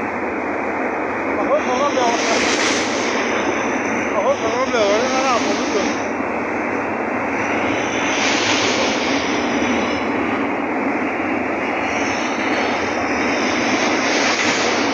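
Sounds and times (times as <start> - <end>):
moving train rushing: 0.0 - 14.9.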